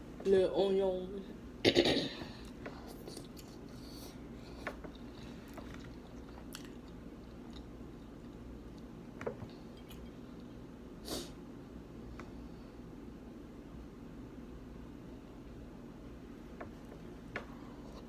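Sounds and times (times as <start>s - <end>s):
low steady hum: 0.0s - 18.0s
chewing and biting food: 4.6s - 8.9s.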